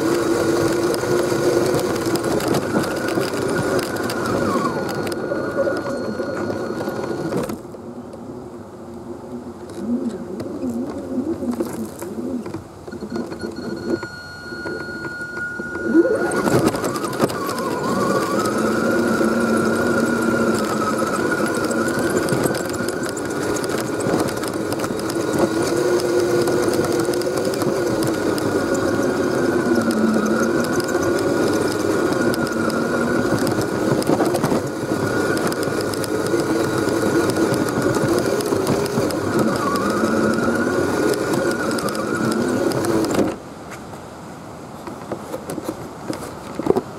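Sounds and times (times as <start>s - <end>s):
electric motor and gearbox whining: 0.0s - 7.7s, 9.6s - 43.4s
steady high tone: 2.2s - 7.4s, 12.9s - 33.8s.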